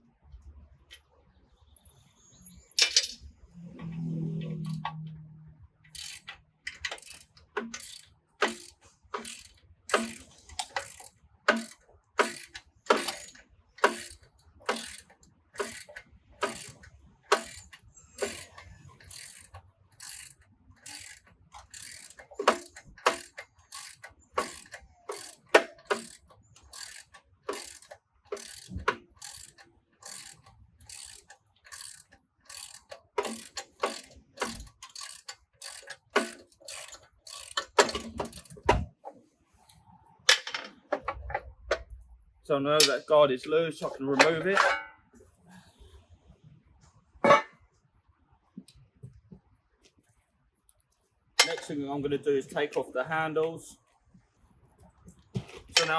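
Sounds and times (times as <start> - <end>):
ratchet wrench clicking: 5.8 - 38.7.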